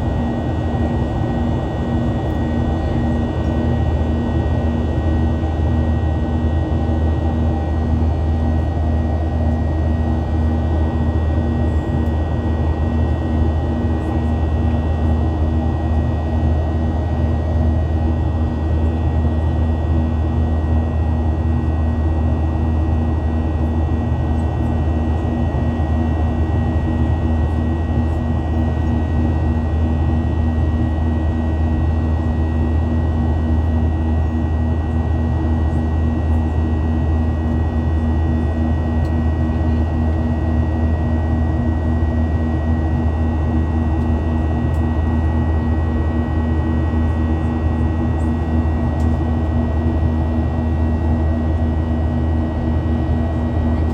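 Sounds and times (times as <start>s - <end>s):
high engine whine: 0.0s - 21.6s, 40.5s - 53.9s
jet engines droning in cabin: 0.0s - 53.9s.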